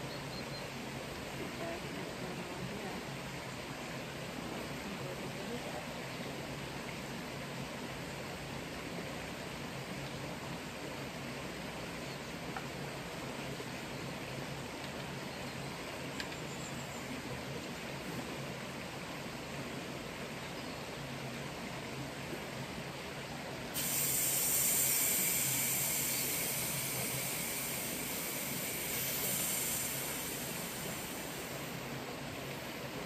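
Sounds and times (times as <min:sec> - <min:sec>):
steady background hiss: 0:00.0 - 0:33.0
sprayer spraying: 0:23.8 - 0:31.8.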